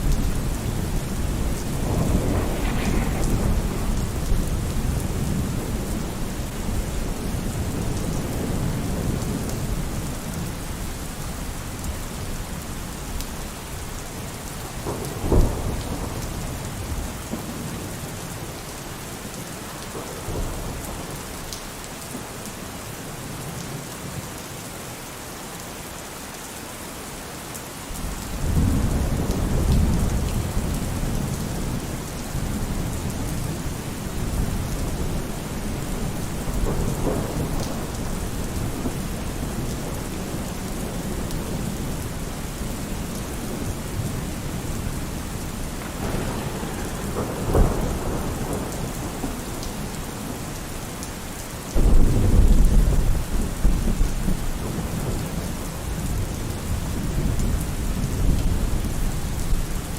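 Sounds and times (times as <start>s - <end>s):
rolling thunder: 0.0s - 10.9s, 14.5s - 18.1s, 27.9s - 51.1s, 51.8s - 59.6s
steady rain: 0.0s - 59.9s.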